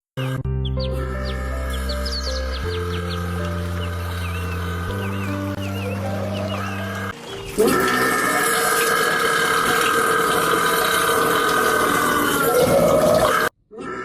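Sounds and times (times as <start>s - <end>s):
long loud burp: 7.6s - 14.0s.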